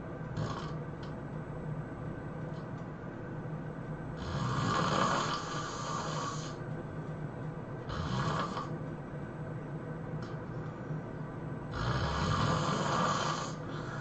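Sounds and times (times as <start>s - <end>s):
person snoring heavily: 0.4s - 0.8s, 4.2s - 6.6s, 7.9s - 8.7s, 11.7s - 14.0s.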